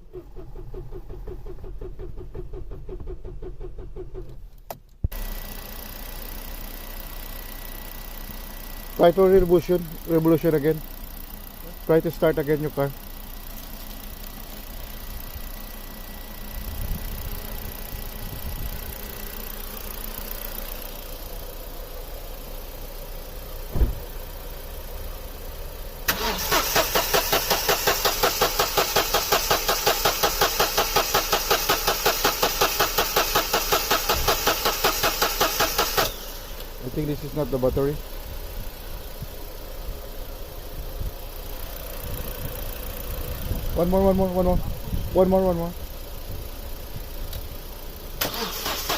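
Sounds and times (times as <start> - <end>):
car engine cranking: 0.0 - 6.5, 8.2 - 48.9
steady engine hum: 0.0 - 48.9
single knock: 23.7 - 24.0.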